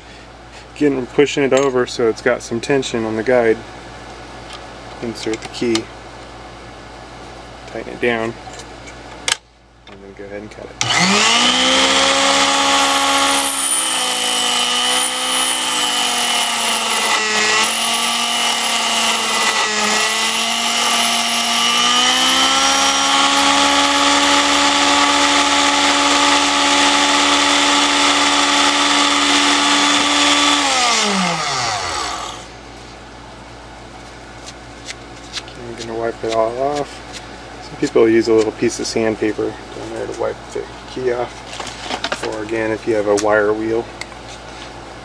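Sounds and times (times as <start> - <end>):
key-cutting machine whining: 10.8 - 32.4.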